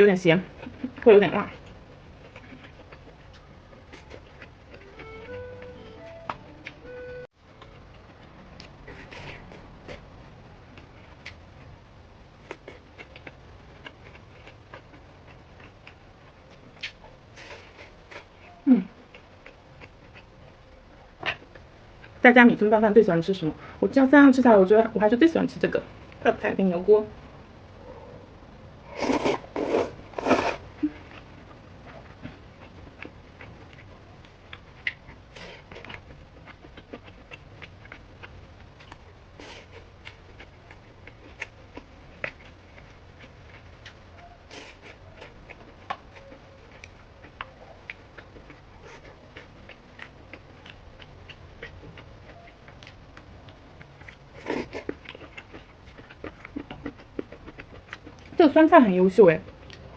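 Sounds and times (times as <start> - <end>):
crisp chewing crunches: 0.4 - 5.3, 28.9 - 58.4.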